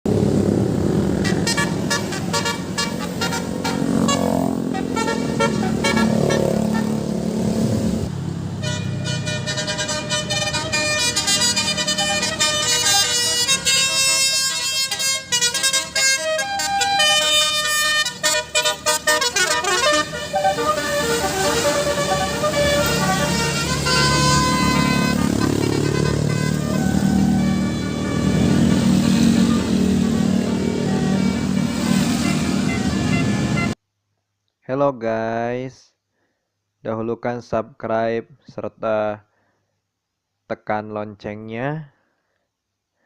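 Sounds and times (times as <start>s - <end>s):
vehicle rumble: 0.1s - 33.8s
short horn blasts: 1.2s - 7.1s, 8.6s - 33.8s
bus musical horn melody: 1.2s - 7.2s, 8.5s - 33.8s.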